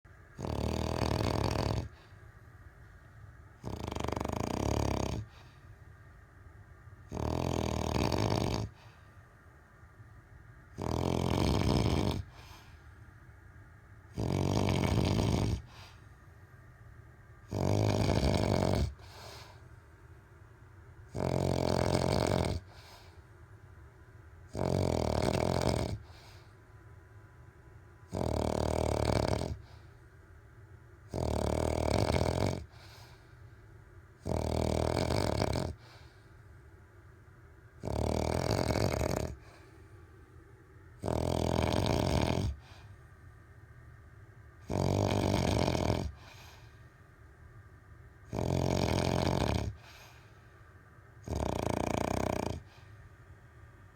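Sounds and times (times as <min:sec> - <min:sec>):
quiet breathing: 0:00.1 - 0:53.9
man snoring: 0:00.4 - 0:02.0, 0:03.6 - 0:05.3, 0:07.1 - 0:08.8, 0:10.8 - 0:12.4, 0:14.2 - 0:15.7, 0:17.5 - 0:19.3, 0:21.1 - 0:22.9, 0:24.5 - 0:26.2, 0:28.1 - 0:29.6, 0:31.1 - 0:32.8, 0:34.2 - 0:35.9, 0:37.8 - 0:39.4, 0:41.0 - 0:42.6, 0:44.7 - 0:46.4, 0:48.3 - 0:50.0, 0:51.2 - 0:52.7.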